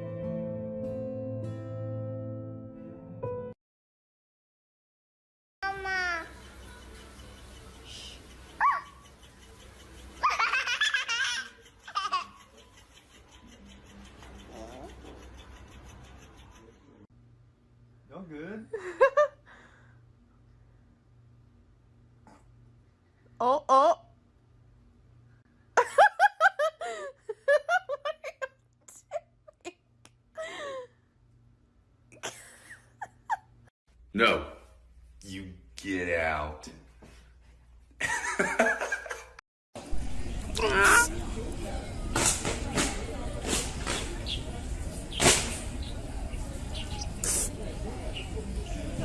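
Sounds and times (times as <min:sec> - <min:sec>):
high-pitched laughter: 0:09.8 - 0:16.7
person giggling: 0:32.2 - 0:33.6.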